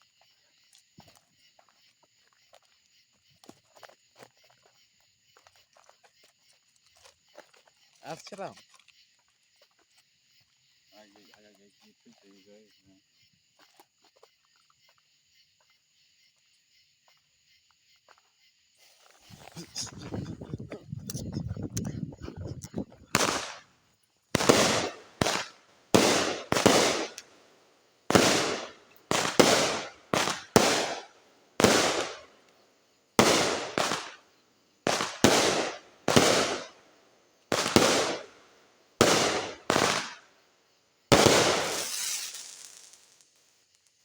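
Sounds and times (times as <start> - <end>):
fireworks bangs: 19.4 - 23.7, 24.3 - 27.5, 28.1 - 32.4, 33.2 - 34.2, 34.8 - 36.8, 37.5 - 40.3, 41.1 - 43.3.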